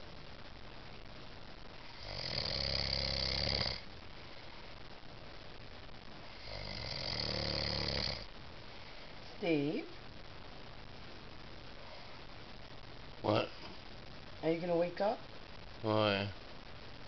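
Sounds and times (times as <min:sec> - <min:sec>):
quiet breathing: 0:01.7 - 0:05.0, 0:06.0 - 0:09.4, 0:11.6 - 0:12.6
man snoring: 0:01.9 - 0:03.8, 0:06.3 - 0:08.3.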